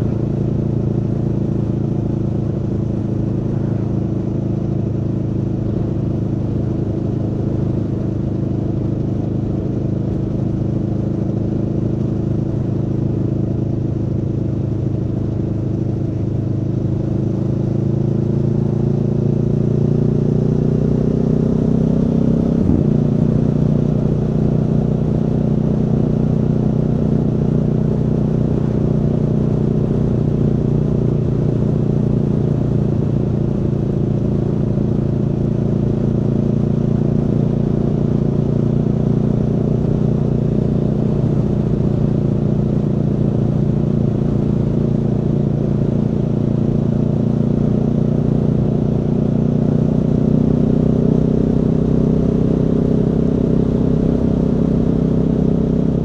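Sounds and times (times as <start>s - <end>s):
motorcycle engine accelerating: 0.0s - 56.0s.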